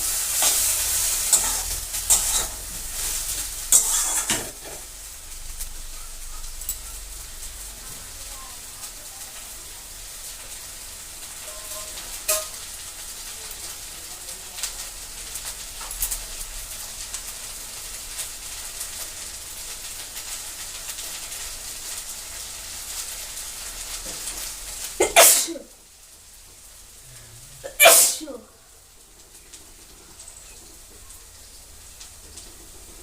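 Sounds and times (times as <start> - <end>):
high hiss with crackles: 0.0 - 33.0
person sneezing: 25.0 - 25.7, 27.2 - 28.5.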